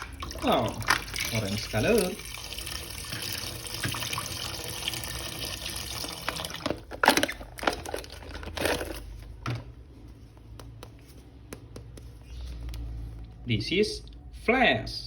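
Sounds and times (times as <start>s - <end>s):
water running from a tap: 0.0s - 6.6s.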